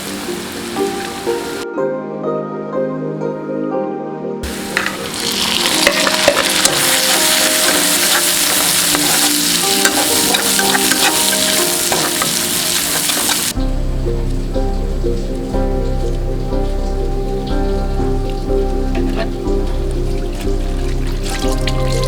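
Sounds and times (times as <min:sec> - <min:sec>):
food sizzling in a pan: 0:00.0 - 0:01.6, 0:04.4 - 0:13.6
stirring scrape and clatter: 0:04.7 - 0:13.6.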